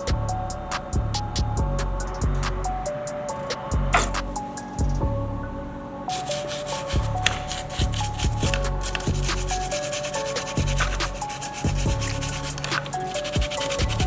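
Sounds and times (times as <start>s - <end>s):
background music: 0.0s - 14.0s
sandpaper rubbing: 6.1s - 14.0s.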